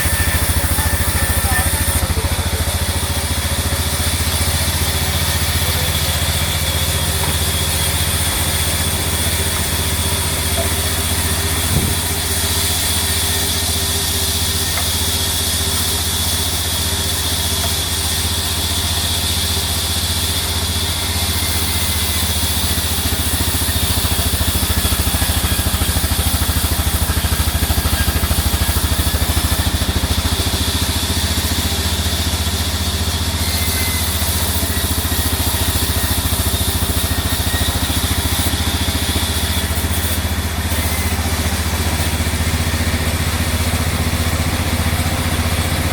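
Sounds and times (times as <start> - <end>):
sawmill machinery droning: 0.0 - 45.9
short knock: 11.6 - 12.2.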